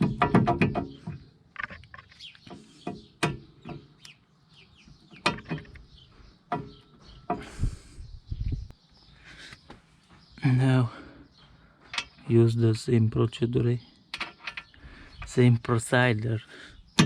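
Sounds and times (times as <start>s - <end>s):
small birds chirping: 0.0s - 17.0s
metallic knocks and clinks: 14.1s - 14.8s.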